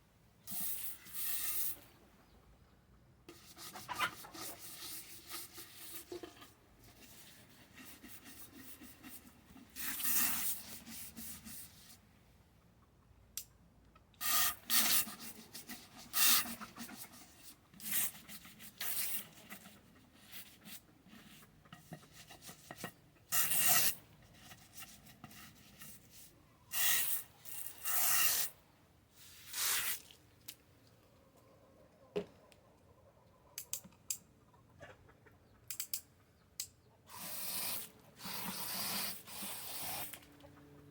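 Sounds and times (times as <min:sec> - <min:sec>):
scraping and rubbing bursts: 0:03.3 - 0:12.0, 0:14.2 - 0:30.2, 0:37.1 - 0:40.4.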